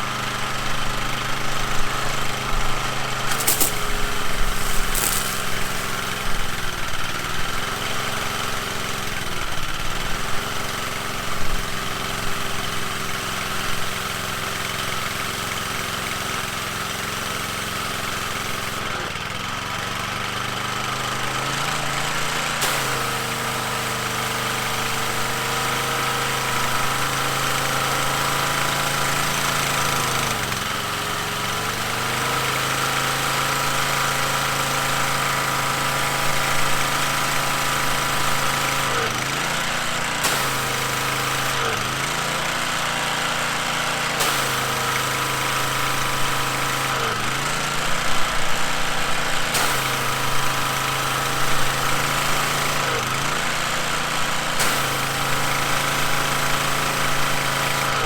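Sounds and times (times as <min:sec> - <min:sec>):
small gas engine running: 0:00.0 - 0:58.0.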